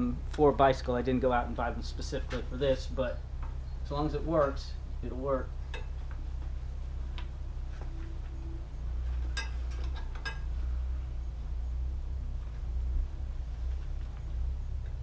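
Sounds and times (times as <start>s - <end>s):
steady low hum: 0.0s - 15.0s
light clicks and clinks: 9.2s - 10.6s.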